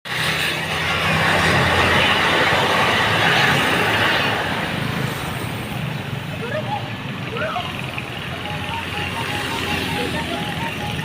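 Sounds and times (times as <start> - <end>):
road and traffic noise: 0.0 - 11.0
heavy vehicle engine running: 0.1 - 11.0.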